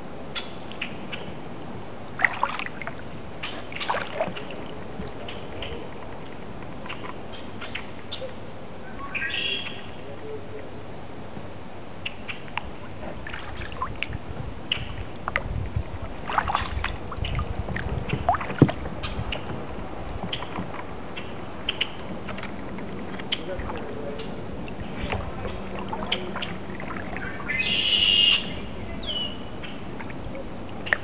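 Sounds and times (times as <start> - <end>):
steady water wash: 0.0 - 31.0
paddle splashes: 0.4 - 31.0
dripping water: 12.0 - 31.0
low rumble: 12.7 - 30.8.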